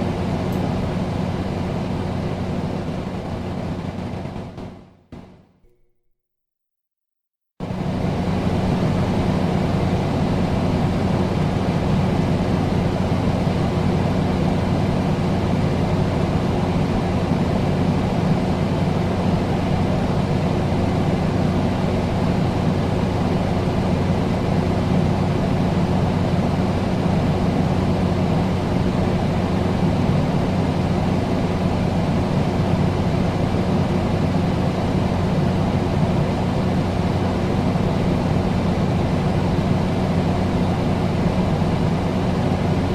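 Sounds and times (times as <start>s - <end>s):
air conditioner airflow: 0.0s - 5.4s, 7.6s - 42.9s
low hum: 7.6s - 10.3s.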